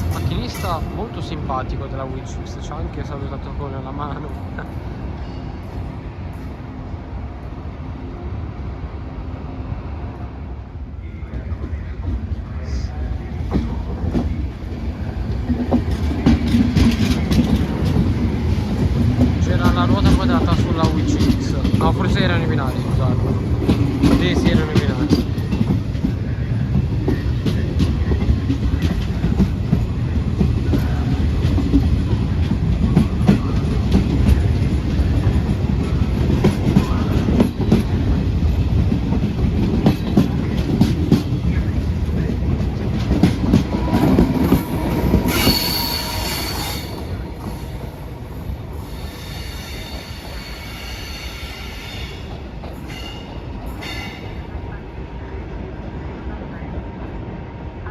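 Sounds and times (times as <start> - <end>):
train wheels rumbling on rails: 0.0 - 57.9
high wheel squeal: 43.8 - 48.0, 48.8 - 52.2.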